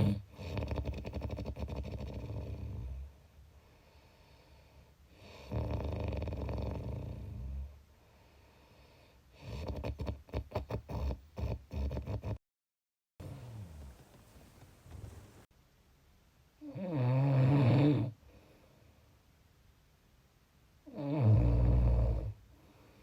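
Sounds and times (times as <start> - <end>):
person snoring: 0.0 - 3.1, 5.2 - 7.7, 16.6 - 18.2.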